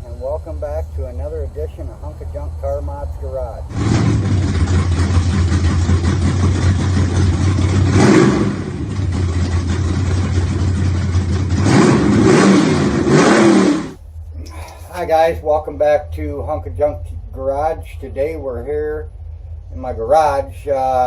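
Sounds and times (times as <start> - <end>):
car engine running and revving: 0.0 - 14.4.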